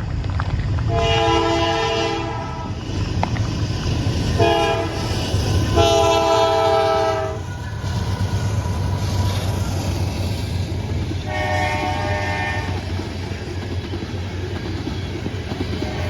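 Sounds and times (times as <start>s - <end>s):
low rumble of train: 0.0s - 16.0s
train horn blasts: 0.9s - 2.8s, 4.4s - 7.6s, 11.2s - 12.9s, 15.8s - 16.0s.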